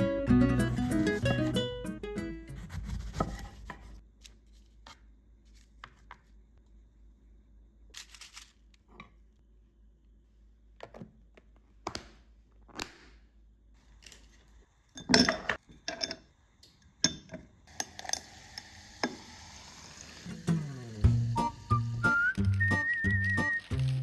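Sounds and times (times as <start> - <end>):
background music: 0.0 - 2.6, 20.4 - 24.0
dishes clinking and knocking: 15.0 - 16.2
steady hiss: 17.7 - 24.0.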